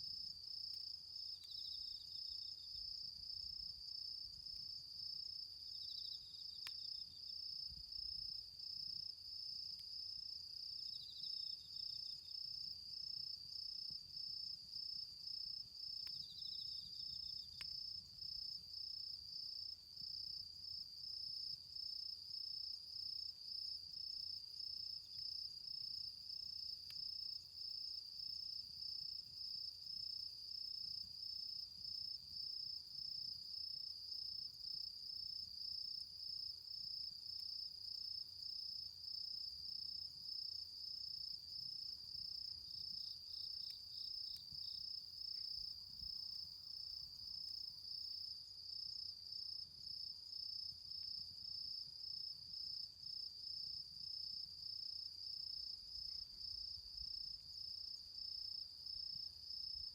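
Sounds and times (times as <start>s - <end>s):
insect chirps: 0.0s - 59.9s.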